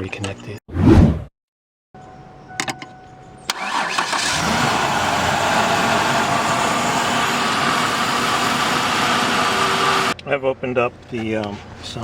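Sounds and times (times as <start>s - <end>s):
engine cranking and running: 3.5s - 10.2s.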